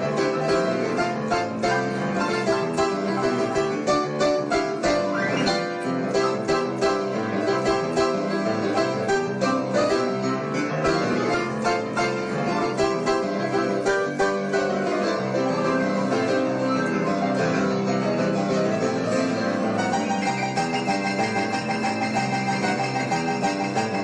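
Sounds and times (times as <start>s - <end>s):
upbeat plucked string music: 19.9s - 24.0s.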